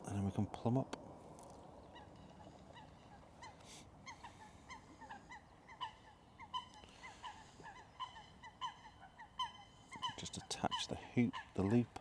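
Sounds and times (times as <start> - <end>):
geese honking: 3.4 - 11.8.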